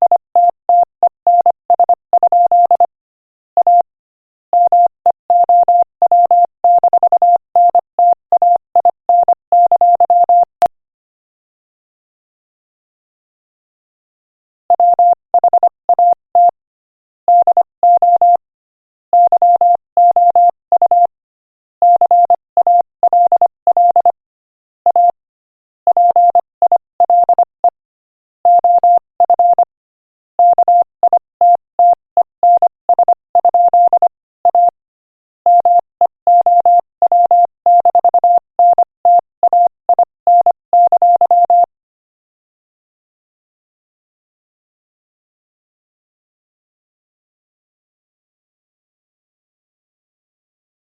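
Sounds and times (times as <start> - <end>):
morse code beeps: 0.1 - 2.9, 3.6 - 3.9, 4.6 - 10.5, 14.8 - 16.6, 17.3 - 18.4, 19.2 - 21.1, 21.8 - 24.2, 24.9 - 25.2, 25.9 - 27.8, 28.5 - 29.7, 30.4 - 34.8, 35.5 - 41.7.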